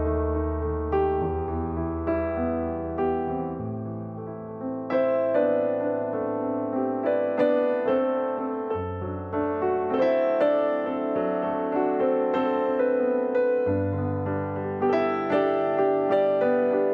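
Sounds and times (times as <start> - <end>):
slow piano melody: 0.0 - 16.9.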